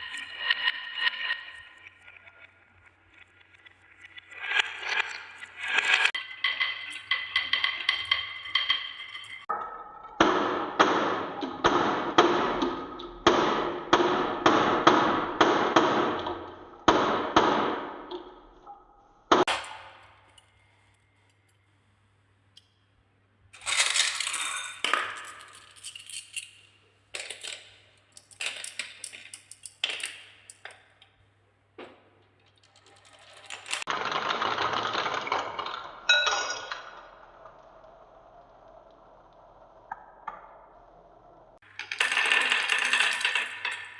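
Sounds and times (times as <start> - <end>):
marbles rattling down wooden track: 6.0 - 9.5, 27.2 - 30.7, 32.4 - 39.8, 41.6 - 43.9
marbles clinking together: 41.6 - 43.9.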